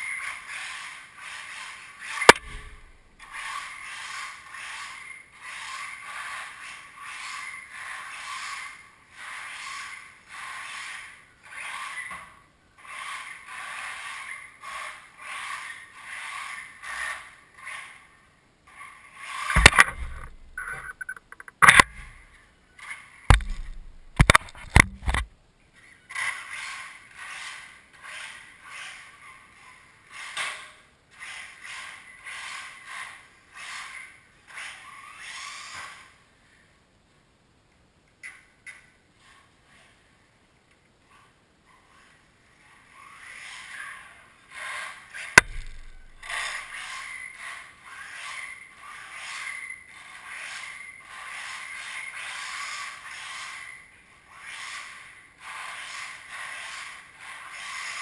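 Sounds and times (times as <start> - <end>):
sharp knocks and bangs: 2.3 - 3.0, 19.5 - 22.2, 23.3 - 25.3, 45.4 - 46.6.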